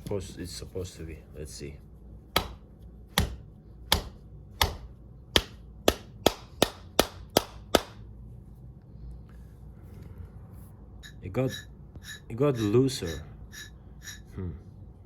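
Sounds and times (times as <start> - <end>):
hammer blows on metal: 11.0 - 14.3.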